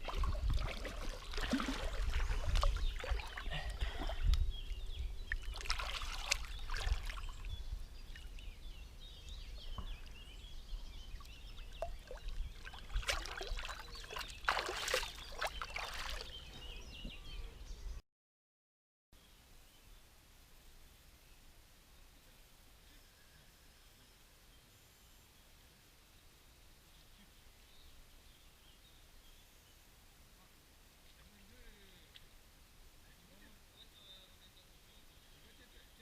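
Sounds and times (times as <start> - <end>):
water splashing and sloshing: 0.0 - 4.4, 5.3 - 7.5, 11.2 - 16.4.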